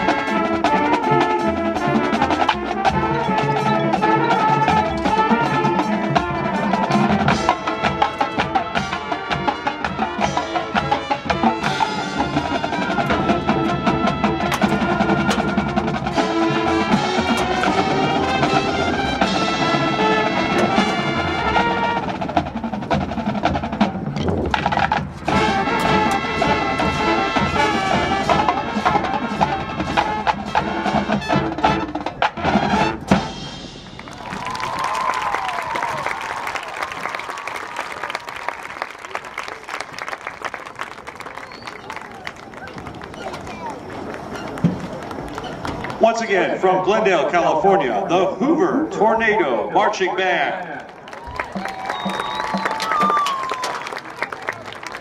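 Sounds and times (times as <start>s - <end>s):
rapid percussion strikes: 0.0s - 34.4s
marching band brass: 0.0s - 55.0s.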